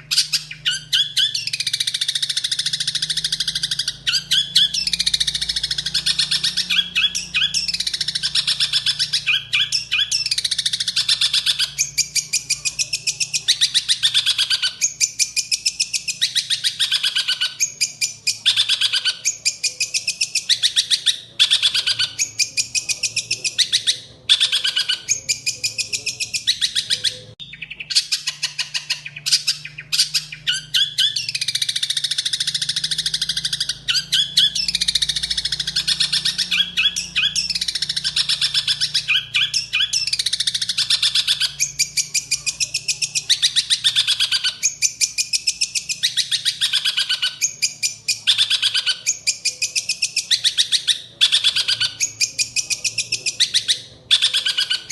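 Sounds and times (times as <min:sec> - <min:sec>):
songbird chirping and trilling: 0:00.0 - 0:54.9.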